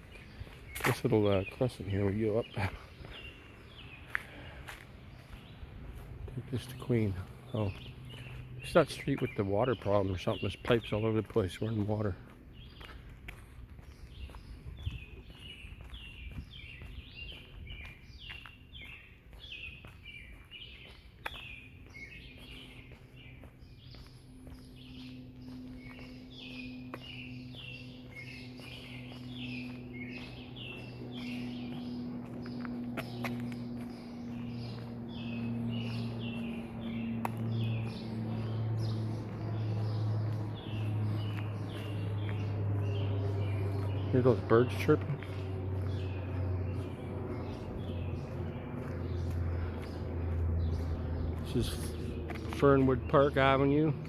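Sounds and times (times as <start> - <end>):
small songbirds chirping: 0.0 - 54.0
steady low hum: 22.4 - 52.8.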